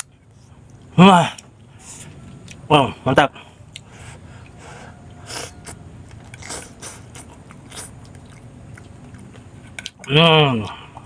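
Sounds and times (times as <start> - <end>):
person chewing: 3.7 - 10.1
noisy mouth sounds: 6.4 - 8.0.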